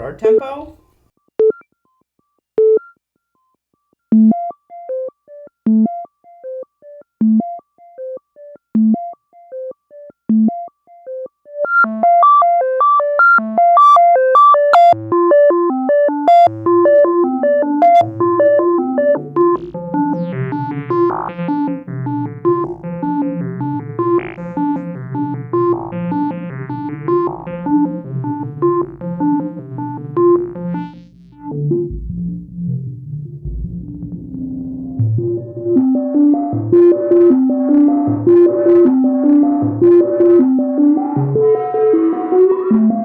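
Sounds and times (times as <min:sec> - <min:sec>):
synthesizer plucked note sequence: 0:16.6 - 0:43.0.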